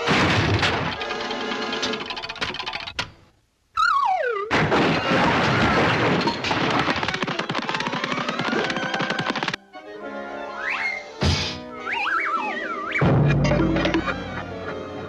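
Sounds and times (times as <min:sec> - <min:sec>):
descending whistle tone: 0:10.5 - 0:11.1, 0:11.7 - 0:13.1.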